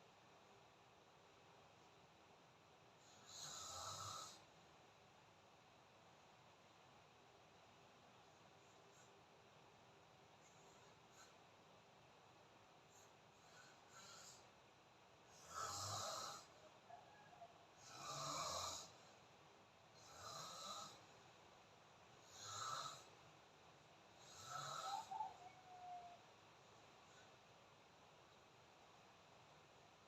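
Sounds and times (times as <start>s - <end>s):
person snoring: 15.3s - 16.6s, 17.8s - 19.0s, 20.0s - 21.0s, 24.2s - 25.5s.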